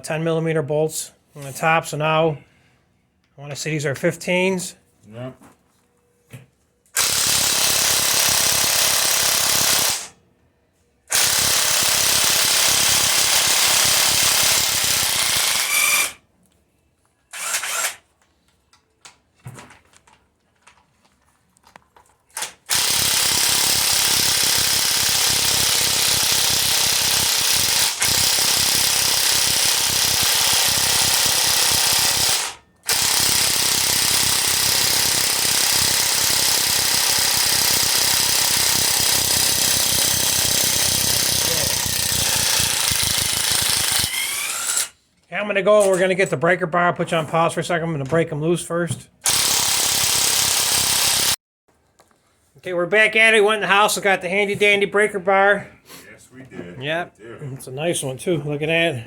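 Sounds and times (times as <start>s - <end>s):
impact wrench hammering: 11.1s - 16.2s, 22.4s - 44.9s, 49.2s - 51.4s.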